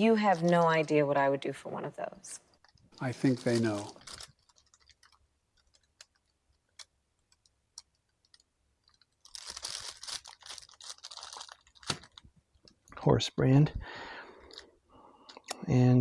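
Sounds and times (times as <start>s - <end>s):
paper and plastic crinkling: 0.0s - 0.9s, 2.6s - 12.8s.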